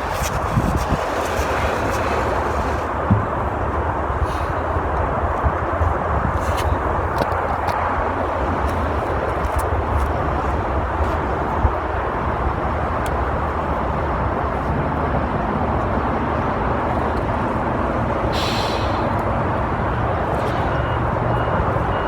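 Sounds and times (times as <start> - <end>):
traffic engines rumbling: 0.0 - 22.0
air hiss: 18.3 - 19.2.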